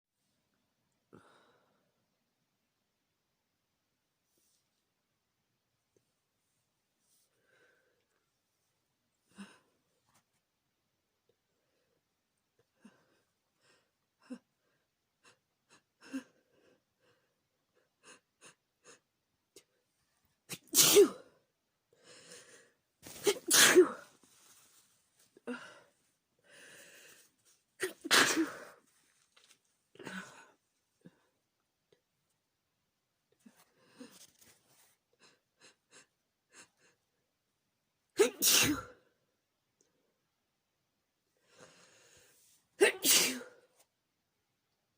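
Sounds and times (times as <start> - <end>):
woman sneezing: 20.5 - 21.2, 23.1 - 24.1, 27.8 - 28.8, 38.2 - 39.0, 42.8 - 43.6.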